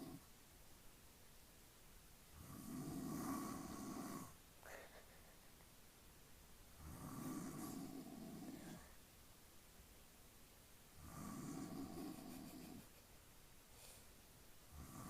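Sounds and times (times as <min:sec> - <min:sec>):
man snoring: 0:00.0 - 0:00.2, 0:02.4 - 0:04.4, 0:06.8 - 0:08.9, 0:11.0 - 0:12.8, 0:14.7 - 0:15.0.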